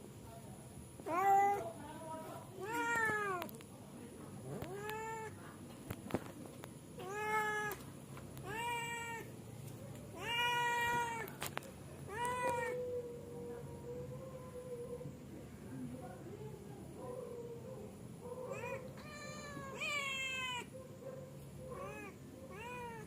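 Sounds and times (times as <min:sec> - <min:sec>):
cat meowing: 0:02.6 - 0:03.5, 0:07.0 - 0:07.8, 0:08.4 - 0:09.3, 0:10.2 - 0:11.3, 0:12.1 - 0:13.0, 0:18.5 - 0:20.7, 0:21.8 - 0:23.0.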